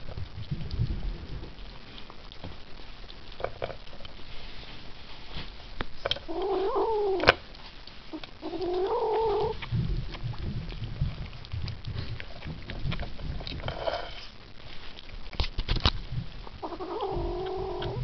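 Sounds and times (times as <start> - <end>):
kitten eating noises: 0.0 - 18.0
kitten growling yowls: 6.3 - 7.4, 8.2 - 9.6, 16.6 - 18.0.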